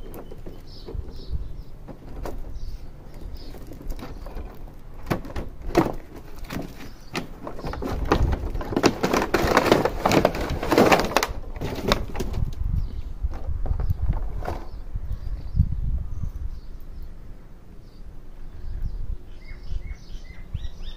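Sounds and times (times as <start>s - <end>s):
packaging rustling: 3.4s - 12.4s.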